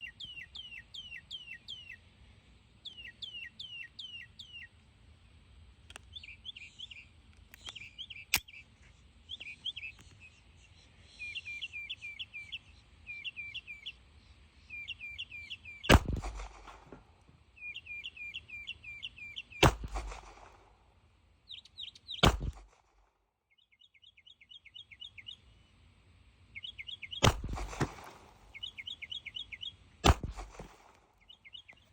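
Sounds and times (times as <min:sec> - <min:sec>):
bird laughing call: 0:09.4 - 0:13.9
pistol shots: 0:15.9 - 0:17.0, 0:19.6 - 0:20.8, 0:22.2 - 0:22.9, 0:27.2 - 0:28.7, 0:30.0 - 0:31.0.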